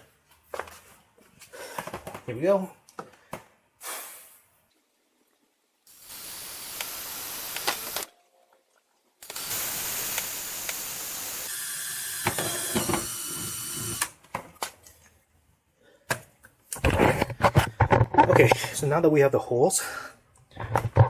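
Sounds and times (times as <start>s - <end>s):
power drill boring holes: 5.9s - 8.1s, 9.2s - 14.2s.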